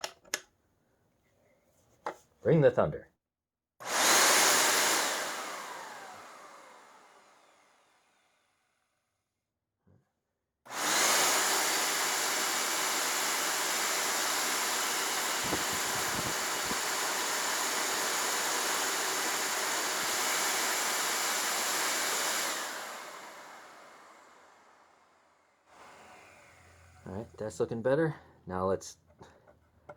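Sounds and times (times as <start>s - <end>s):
vacuum cleaner motor running: 3.8s - 8.8s, 10.7s - 27.6s
vacuum switch: 10.7s - 24.1s.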